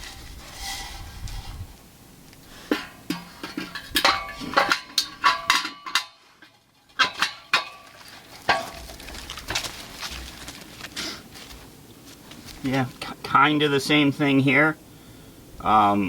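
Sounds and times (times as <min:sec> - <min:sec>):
metal pieces clanking: 0:02.7 - 0:06.2, 0:06.8 - 0:09.6.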